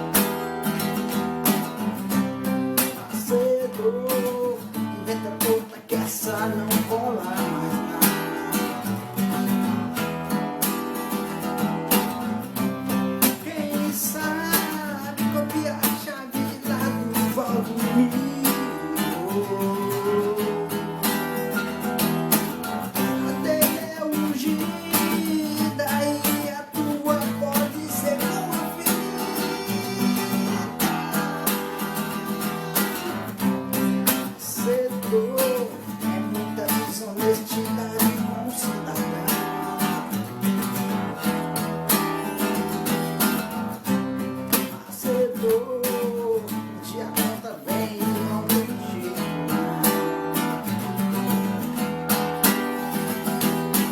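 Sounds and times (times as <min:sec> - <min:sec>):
acoustic guitar picked and strummed: 0:00.0 - 0:53.9
person singing: 0:02.6 - 0:09.9, 0:12.6 - 0:21.8, 0:22.7 - 0:40.9, 0:44.4 - 0:51.6.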